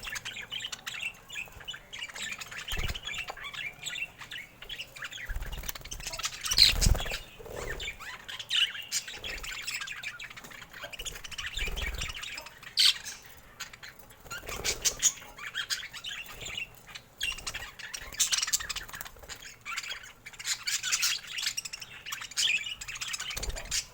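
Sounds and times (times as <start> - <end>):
budgerigars chirping: 0.0 - 23.9.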